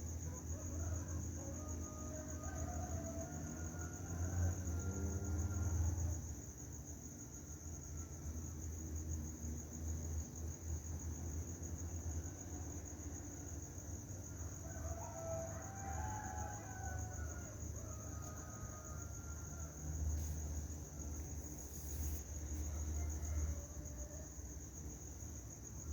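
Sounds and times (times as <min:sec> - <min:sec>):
crickets chirring: 0:00.0 - 0:25.9
rooster crowing faintly: 0:14.4 - 0:25.0.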